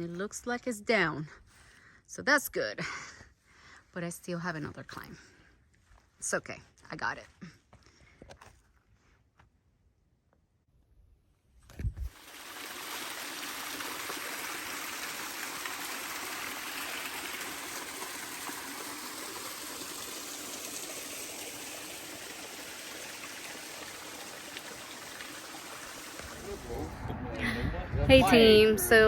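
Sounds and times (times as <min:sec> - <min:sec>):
stream rushing: 0:12.1 - 0:27.0.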